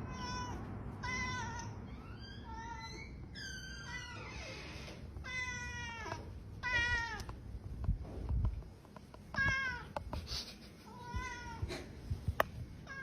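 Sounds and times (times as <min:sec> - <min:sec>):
cat meowing: 0:00.0 - 0:04.5, 0:05.2 - 0:07.3.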